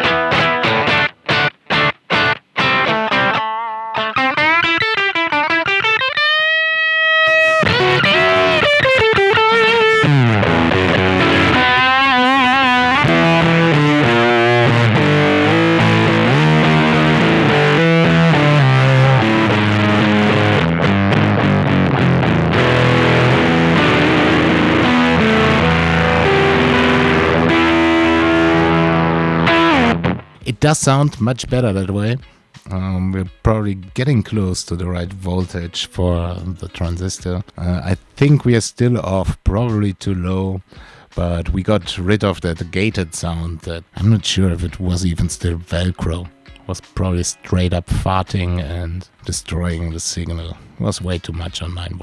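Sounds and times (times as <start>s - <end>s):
fuzzy electric guitar: 0.0s - 30.7s, 40.7s - 50.8s.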